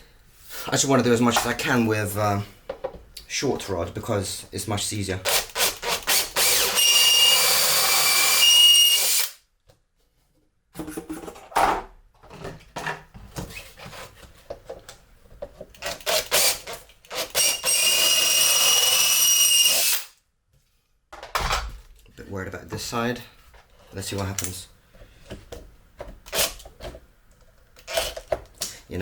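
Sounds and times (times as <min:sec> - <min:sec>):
power drill whining: 0:05.4 - 0:09.4, 0:15.9 - 0:20.1.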